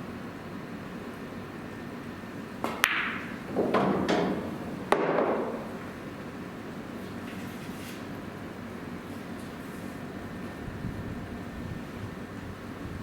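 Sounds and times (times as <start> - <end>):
cue tapping ball: 2.6 - 5.8
pool balls clacking: 2.6 - 5.9.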